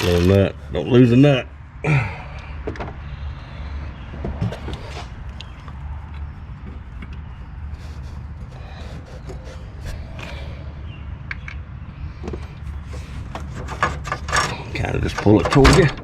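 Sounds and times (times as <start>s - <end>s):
steady low hum: 0.0s - 16.0s
metal clicks and scrapes of tools: 13.2s - 15.8s.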